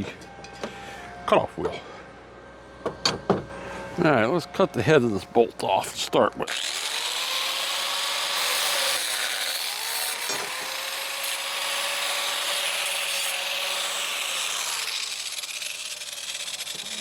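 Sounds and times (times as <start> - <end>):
angle grinder cutting steel: 6.5 - 17.0.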